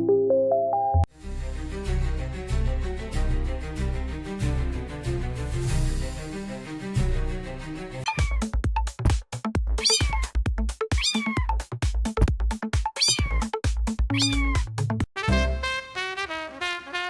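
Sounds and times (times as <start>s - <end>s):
cat meow sample: 8.1s - 8.5s, 9.8s - 10.3s, 11.0s - 11.5s, 13.0s - 13.5s, 14.1s - 14.6s.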